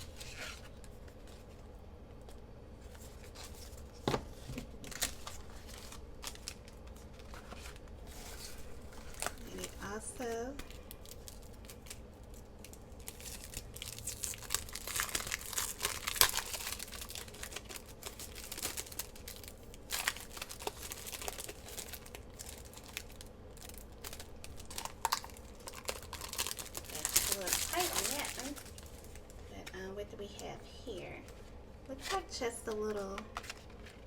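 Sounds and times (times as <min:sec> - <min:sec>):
packaging crinkling: 0:02.2 - 0:29.7, 0:33.2 - 0:34.0
packaging tearing: 0:04.9 - 0:10.0, 0:10.6 - 0:29.3.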